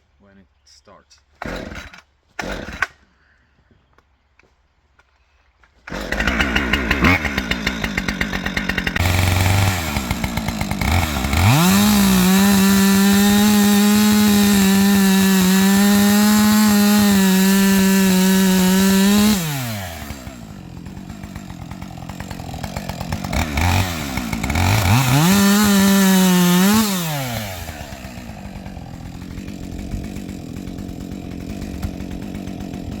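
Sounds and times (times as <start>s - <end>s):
chainsaw idling and revving: 1.4s - 3.0s, 5.8s - 33.0s.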